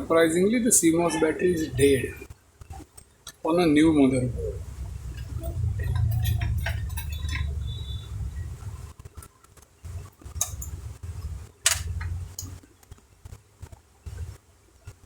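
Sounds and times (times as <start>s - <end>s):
low handling rumble: 0.9s - 2.3s, 3.5s - 9.0s, 9.9s - 12.6s.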